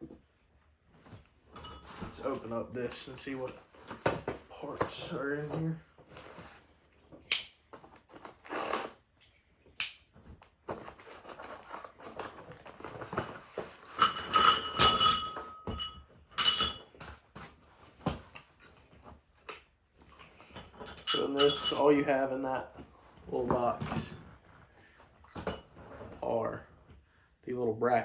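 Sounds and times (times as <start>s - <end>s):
rustling in a box: 10.2s - 14.3s
metal brackets clinking: 20.8s - 21.9s.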